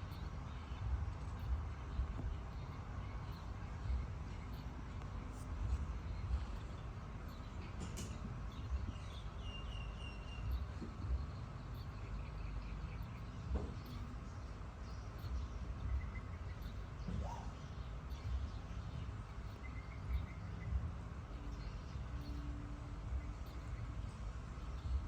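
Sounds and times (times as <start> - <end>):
low rumbling background noise: 0.0 - 25.0.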